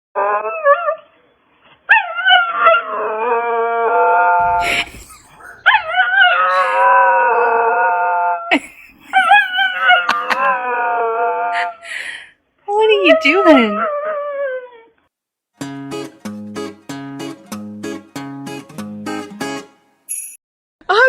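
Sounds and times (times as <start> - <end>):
dog howling: 1.9 - 8.5, 9.2 - 11.8, 13.1 - 14.9.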